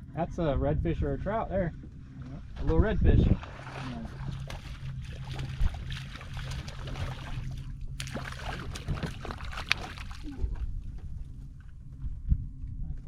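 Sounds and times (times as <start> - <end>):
low hum: 0.0 - 13.0
water sloshing against boat hull: 1.7 - 12.1.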